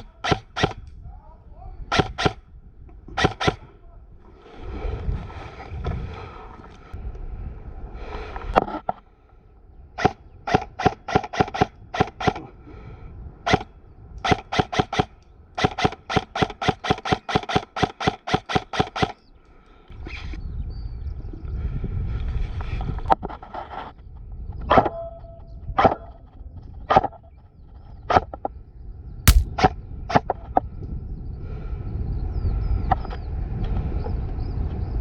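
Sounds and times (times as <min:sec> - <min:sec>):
airsoft gun shots clicking: 0:29.3 - 0:29.5.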